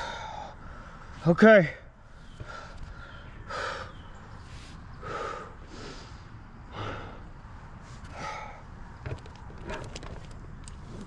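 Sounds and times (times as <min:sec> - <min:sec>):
man breathing heavily: 0:00.0 - 0:01.2, 0:01.8 - 0:09.0.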